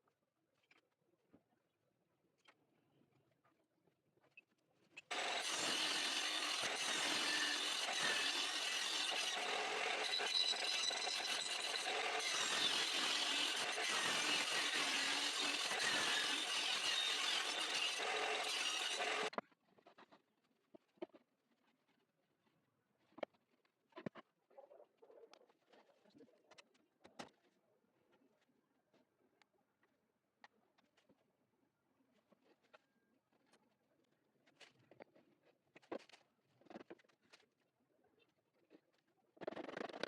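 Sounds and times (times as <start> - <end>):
woodworking tool on wood: 5.1 - 19.3.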